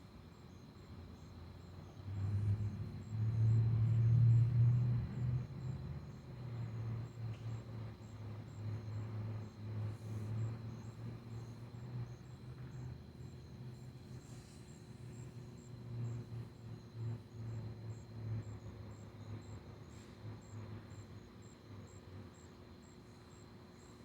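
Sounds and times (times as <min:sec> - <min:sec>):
night insects chirping: 0:00.0 - 0:24.0
distant vehicle engine rumble: 0:01.9 - 0:20.8.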